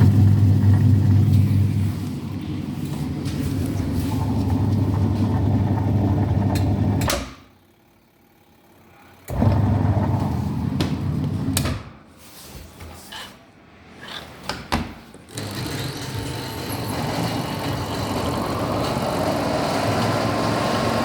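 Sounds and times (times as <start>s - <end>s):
washing machine motor hum: 0.0s - 11.9s, 15.3s - 21.0s.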